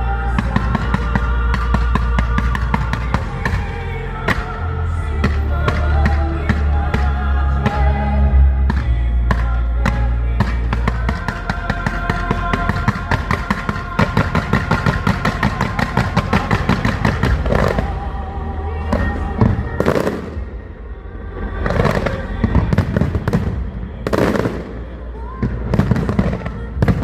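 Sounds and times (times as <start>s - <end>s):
loud music playing: 0.0s - 27.0s
firework bursts: 10.4s - 18.2s, 19.0s - 20.6s.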